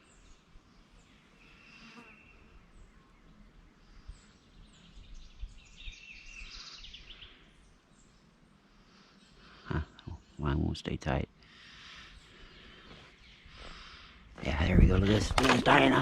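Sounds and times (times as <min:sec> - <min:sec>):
songbird chirps and trills: 0:00.0 - 0:16.0.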